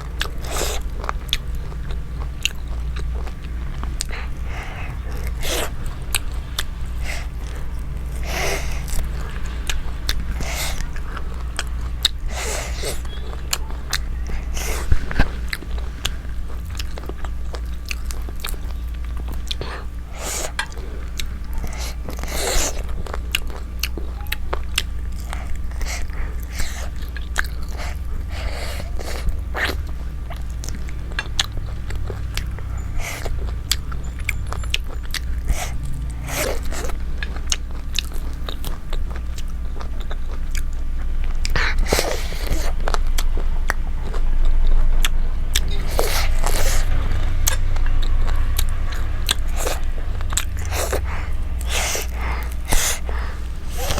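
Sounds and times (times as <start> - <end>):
chewing and biting: 0.0 - 53.9
mouth smacks: 45.0 - 53.9.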